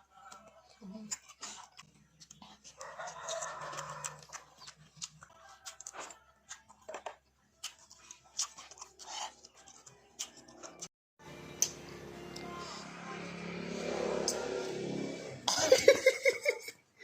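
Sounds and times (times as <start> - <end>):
crisp crackles of pods chewed: 0.0 - 10.9.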